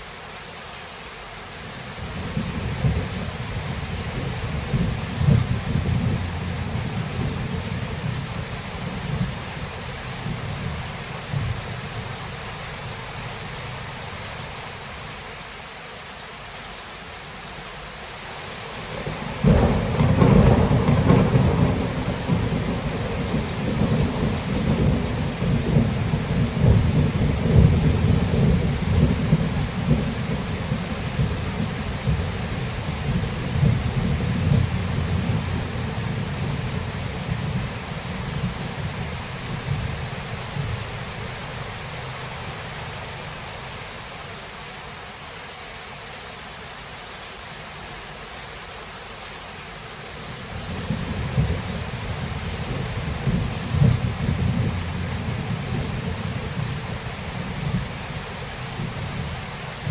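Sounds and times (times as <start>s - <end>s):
rain hiss: 0.0s - 59.9s
thunderclap rumbling: 2.0s - 12.6s, 18.9s - 42.3s, 50.5s - 59.9s.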